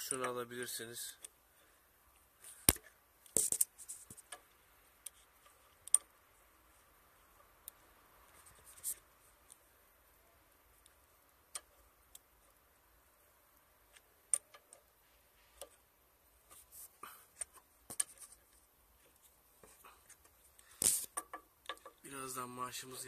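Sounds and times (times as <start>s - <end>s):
hand tools clicking and tapping: 14.3s - 14.9s, 19.6s - 22.0s.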